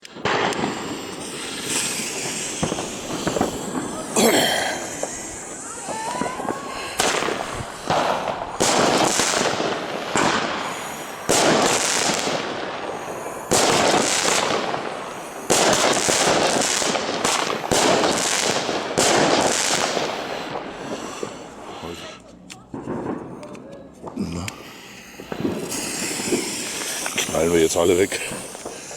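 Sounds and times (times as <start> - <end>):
fizzing crackle: 24.8 - 28.9.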